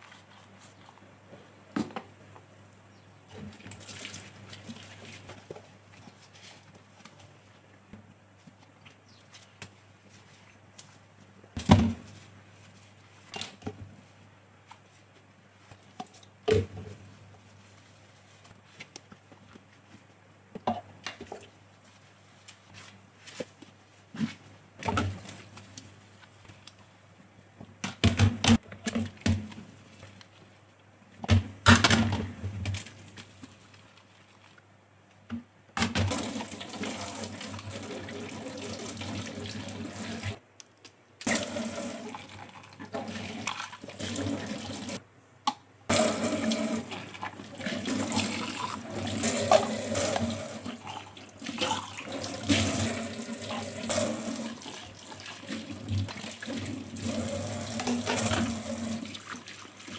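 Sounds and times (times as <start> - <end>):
tap water running over dishes: 3.4 - 6.0, 35.9 - 40.4, 41.3 - 45.0, 45.9 - 59.9.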